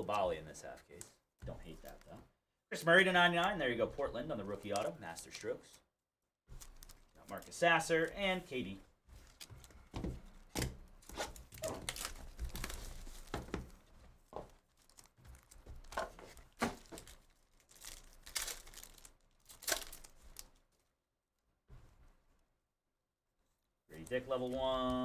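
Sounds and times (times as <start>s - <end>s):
packaging torn and crinkled: 6.5s - 8.2s, 10.6s - 13.4s, 14.7s - 20.6s.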